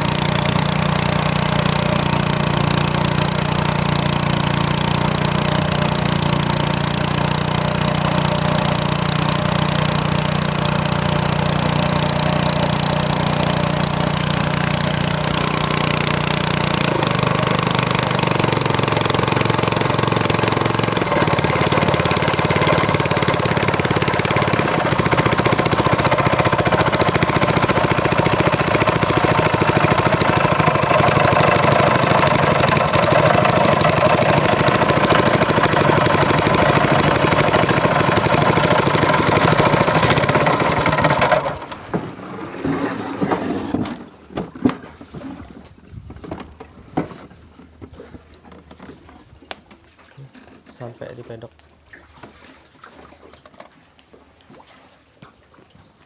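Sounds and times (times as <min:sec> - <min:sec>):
small engine running: 0:00.0 - 0:44.0.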